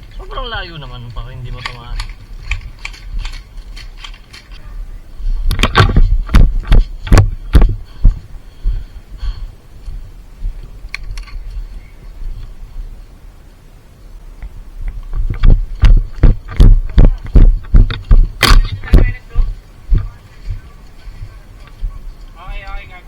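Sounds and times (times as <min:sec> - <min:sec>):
low thud: 0:05.5 - 0:08.2, 0:15.1 - 0:20.6
heavy knocks: 0:15.3 - 0:20.1.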